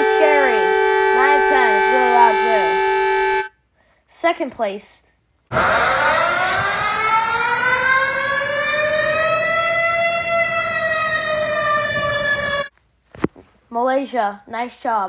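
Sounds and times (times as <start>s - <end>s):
warning siren wailing: 0.0s - 3.5s, 5.5s - 12.7s.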